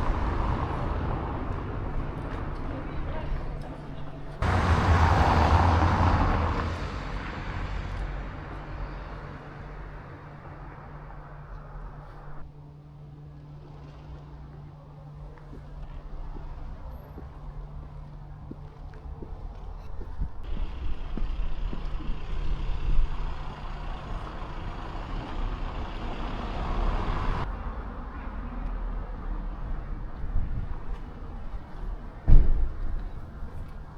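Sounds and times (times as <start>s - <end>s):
vehicle passing by: 0.0s - 12.5s, 20.5s - 27.9s.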